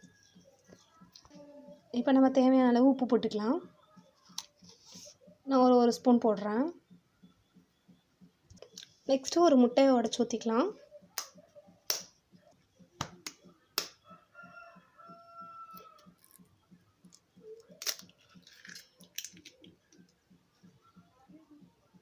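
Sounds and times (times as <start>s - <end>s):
eggshell cracking: 17.1s - 19.7s.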